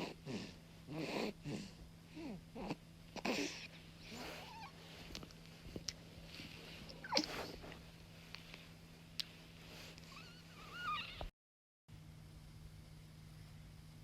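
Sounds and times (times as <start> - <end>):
baby grunting and snuffling: 0.0 - 4.8, 7.0 - 7.7.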